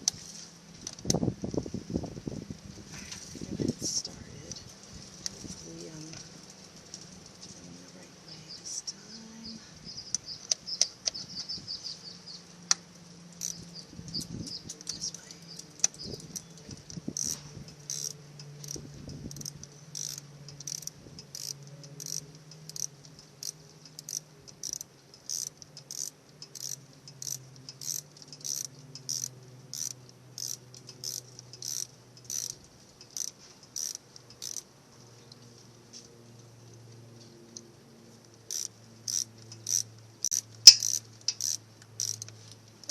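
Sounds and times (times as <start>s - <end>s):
low steady hum: 0.0s - 42.9s
ratcheting wrench clicking: 13.4s - 15.0s, 15.6s - 34.7s, 38.5s - 42.9s.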